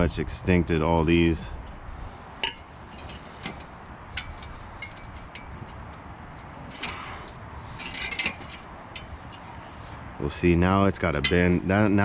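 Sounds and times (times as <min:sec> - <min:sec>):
low background noise: 0:00.0 - 0:12.0
wrench clinking on metal: 0:02.4 - 0:09.7.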